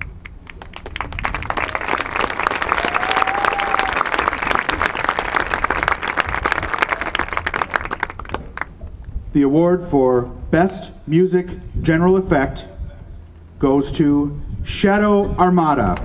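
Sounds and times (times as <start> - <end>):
crowd applauding: 0.0 - 8.7.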